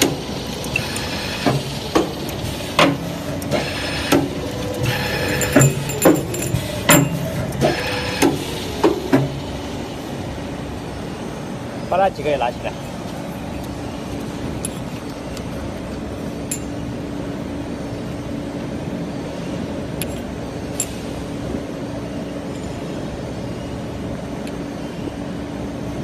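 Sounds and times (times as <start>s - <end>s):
machine running with steady hum: 0.0s - 24.7s
light metallic clinks: 5.3s - 7.2s, 16.4s - 16.8s.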